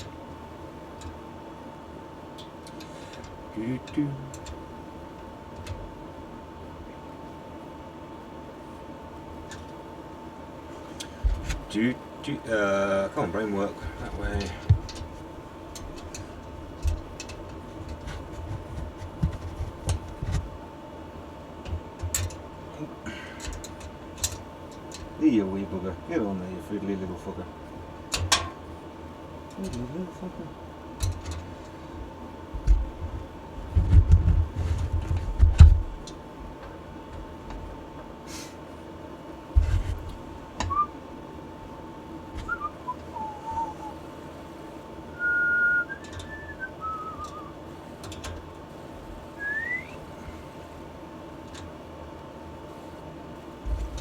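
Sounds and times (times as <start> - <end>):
faint steady hum: 0.0 - 54.0
person whistling: 40.7 - 40.9, 42.4 - 44.0, 45.2 - 47.6, 49.4 - 50.0.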